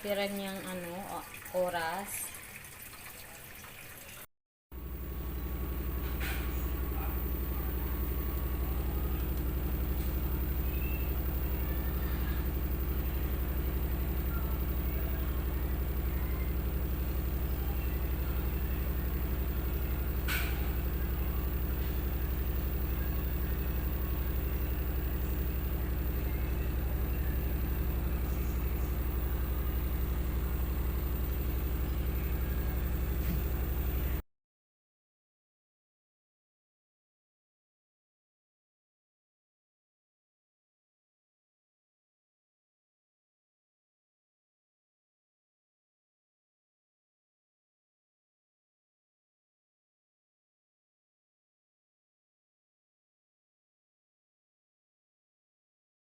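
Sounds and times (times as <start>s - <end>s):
washing machine hum: 0.0s - 34.2s.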